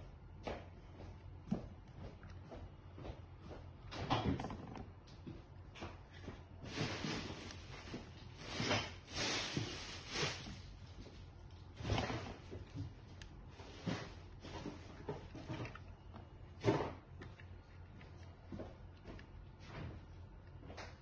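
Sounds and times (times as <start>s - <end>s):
handling rustles and scrapes: 5.6s - 21.0s.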